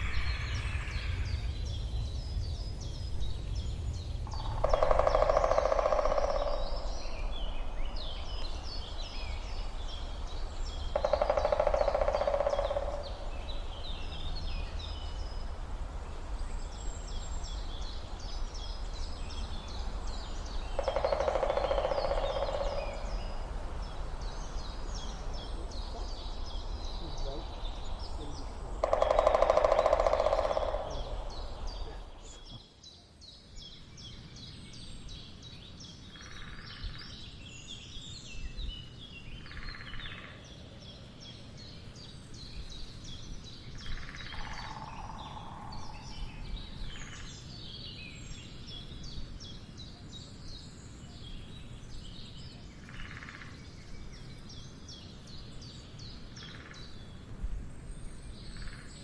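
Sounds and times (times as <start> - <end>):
songbirds chirping: 0.0 - 59.0
woodpecker drumming: 4.2 - 15.0, 17.5 - 32.5, 43.8 - 46.3.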